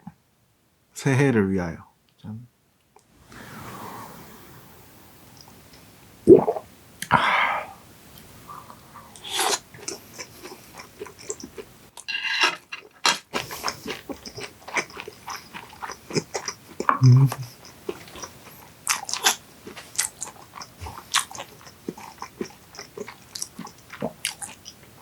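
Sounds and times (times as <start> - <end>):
breathy exhale: 3.2 - 4.9, 7.1 - 7.8
swallowing: 6.3 - 7.7
wet chewing clicks and crunches: 9.2 - 25.0.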